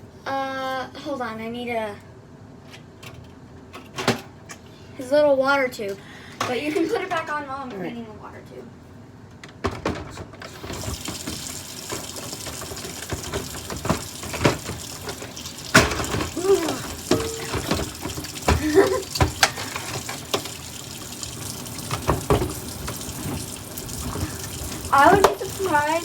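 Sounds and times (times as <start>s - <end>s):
tap running into sink: 10.5s - 26.0s.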